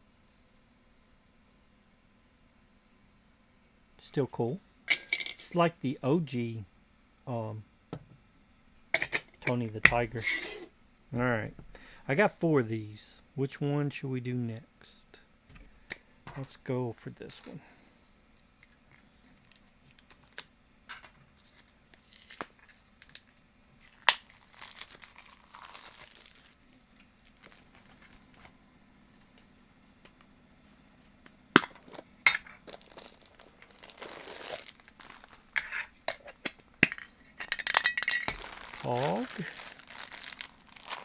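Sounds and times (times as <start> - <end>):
plastic crinkling and tearing: 19.3 - 20.5, 21.4 - 28.5, 32.6 - 35.6, 38.3 - 41.0.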